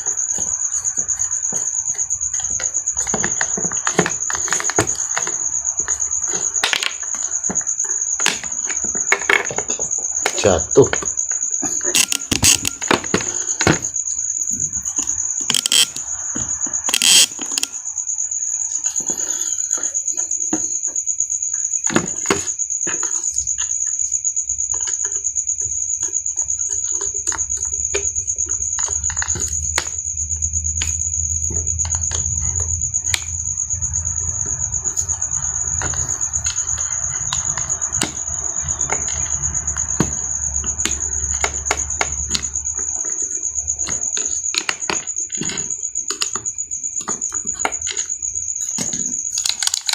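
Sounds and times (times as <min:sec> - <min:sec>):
high-pitched whine: 0:29.2 - 0:42.9.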